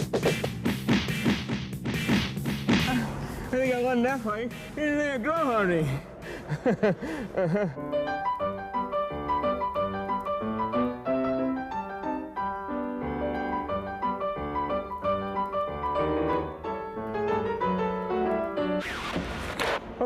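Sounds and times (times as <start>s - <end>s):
piano music: 7.4s - 19.0s.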